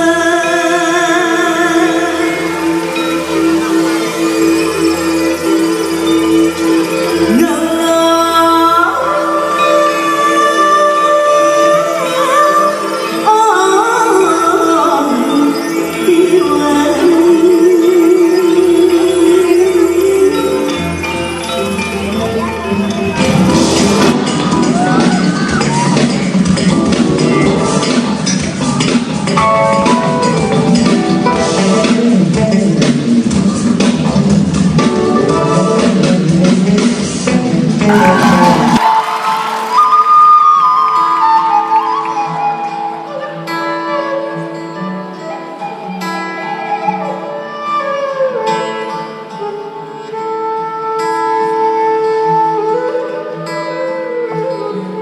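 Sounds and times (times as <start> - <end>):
gamelan fusion ensemble: 0.0 - 52.0
live band music: 0.0 - 55.0
drum kit and percussion: 21.1 - 41.6.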